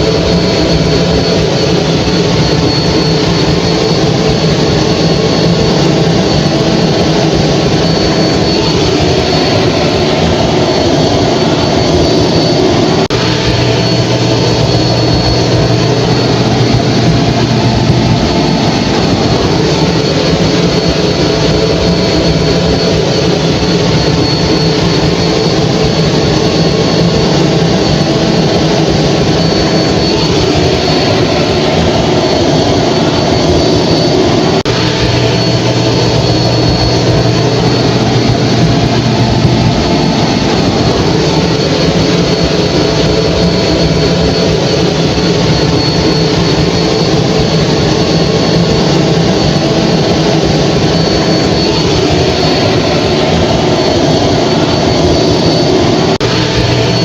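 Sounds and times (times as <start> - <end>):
hair dryer running: 0.0 - 25.5, 26.5 - 44.3
low hum: 0.0 - 57.0.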